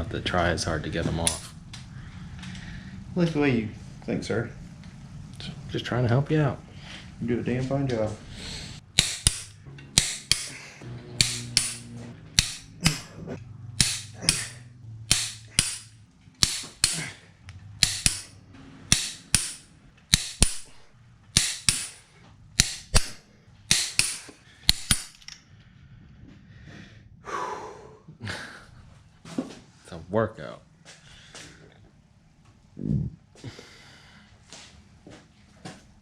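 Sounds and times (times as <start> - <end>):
torque wrench clicking: 8.8 - 10.6, 11.2 - 13.1, 13.8 - 17.1, 17.8 - 20.7, 21.3 - 22.0, 22.6 - 25.4.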